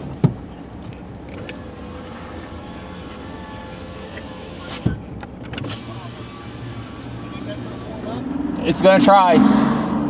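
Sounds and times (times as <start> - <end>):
car engine rumbling: 0.0 - 10.0.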